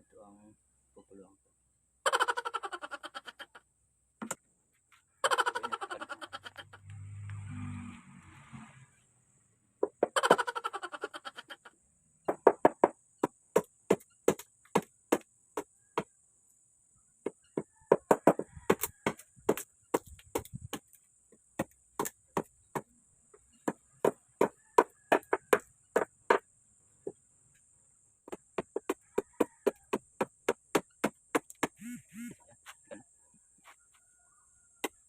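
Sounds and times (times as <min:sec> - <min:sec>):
blade chopping into wood: 0:18.1 - 0:21.0.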